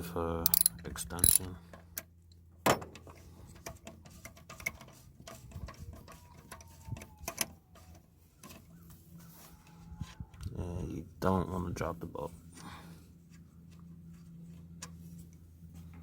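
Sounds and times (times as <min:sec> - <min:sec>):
hand ratchet clicking: 0:00.5 - 0:01.4.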